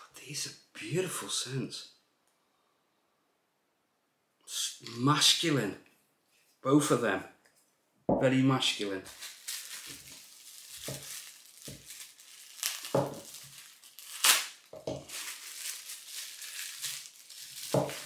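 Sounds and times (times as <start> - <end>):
packaging crinkling: 9.0 - 18.0.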